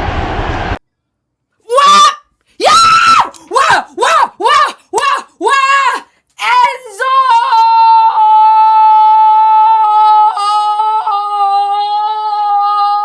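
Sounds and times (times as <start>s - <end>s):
long high-pitched yell: 1.6s - 13.0s.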